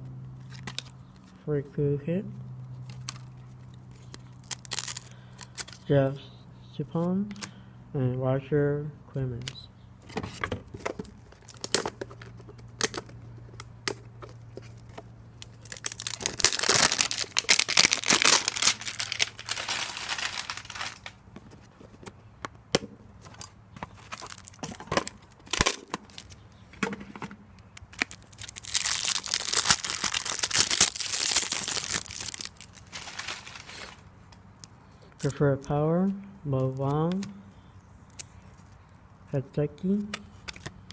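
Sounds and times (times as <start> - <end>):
wrapper crinkling: 2.9 - 5.8, 14.2 - 21.2, 23.9 - 26.4, 27.8 - 34.1.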